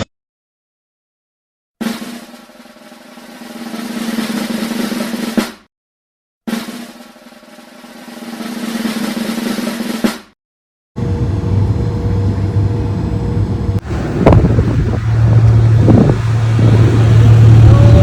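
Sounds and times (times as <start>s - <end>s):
snare drum roll: 1.8s - 5.7s, 6.5s - 10.4s
low hum: 11.0s - 18.0s.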